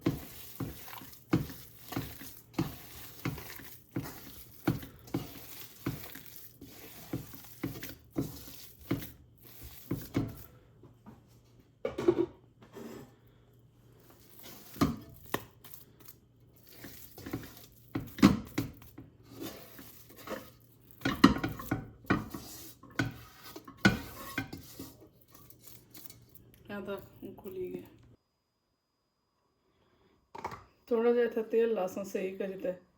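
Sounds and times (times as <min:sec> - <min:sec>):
metal spoon scraping a pot: 0:00.0 - 0:10.5, 0:14.0 - 0:26.4.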